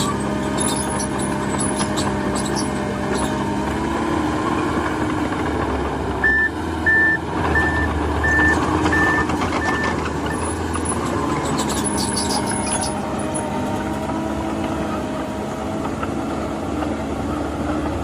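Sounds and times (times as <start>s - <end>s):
diesel machine engine running: 0.0s - 18.0s
reversing alarm beeping: 6.2s - 10.6s.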